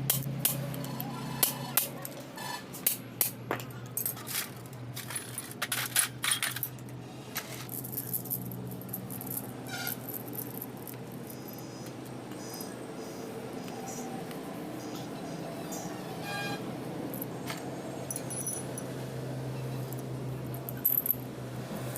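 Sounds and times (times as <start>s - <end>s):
small metal parts clinking: 0.1s - 12.7s, 17.1s - 18.9s, 19.8s - 21.9s.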